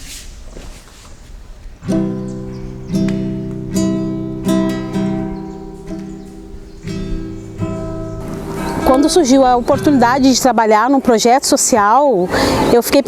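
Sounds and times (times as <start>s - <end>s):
acoustic guitar strumming chords: 1.8s - 10.6s.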